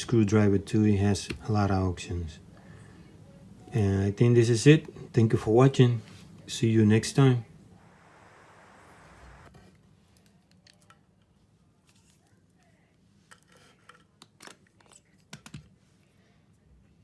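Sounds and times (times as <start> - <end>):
room hiss: 0.0 - 9.5.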